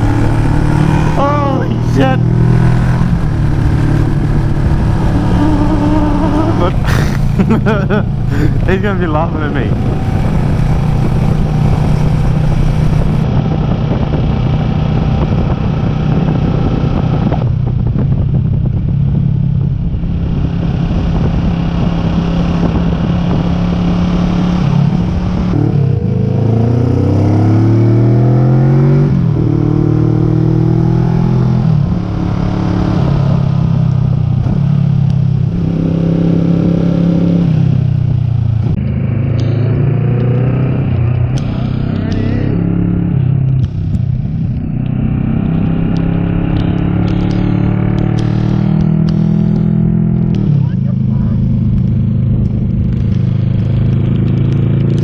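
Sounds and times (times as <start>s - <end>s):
wind rushing: 0.0s - 7.4s, 8.0s - 28.1s
motorcycle engine running: 0.0s - 28.6s, 29.2s - 55.0s.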